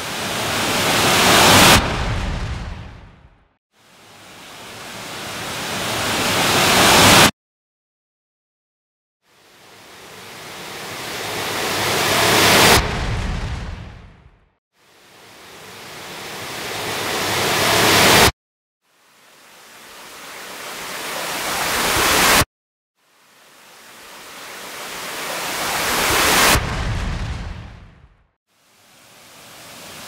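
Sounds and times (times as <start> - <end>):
whooshing noise riser: 0.5 - 3.4, 10.4 - 14.4.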